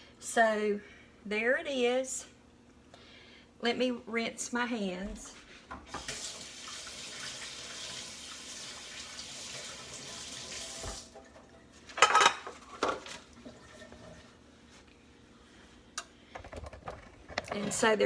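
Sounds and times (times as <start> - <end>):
faucet running: 6.0 - 11.2.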